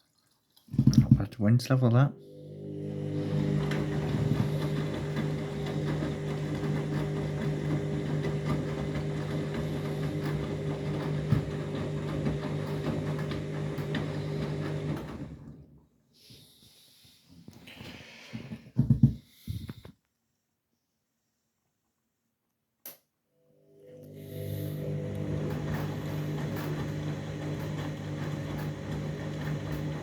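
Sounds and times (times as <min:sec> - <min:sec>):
washing machine spinning: 0:02.2 - 0:15.8, 0:23.6 - 0:30.0.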